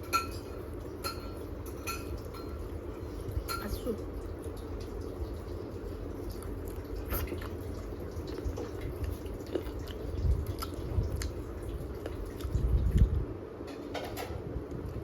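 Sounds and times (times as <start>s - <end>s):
wet chewing and mouth smacking: 6.1s - 13.2s.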